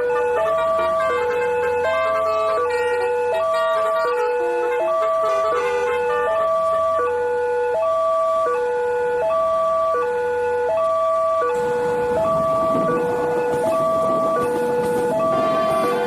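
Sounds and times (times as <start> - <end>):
two-tone crossing alarm: 0.0 - 16.0
low rumbling noise: 11.0 - 16.0.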